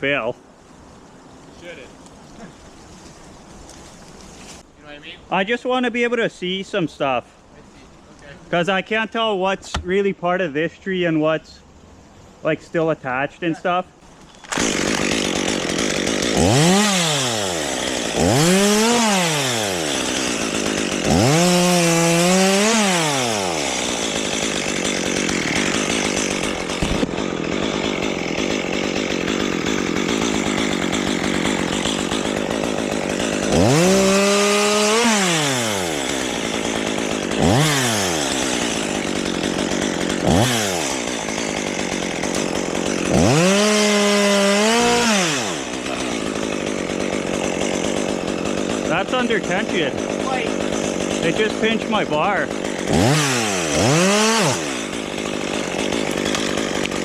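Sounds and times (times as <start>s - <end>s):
chainsaw revving and cutting wood: 14.4s - 57.0s.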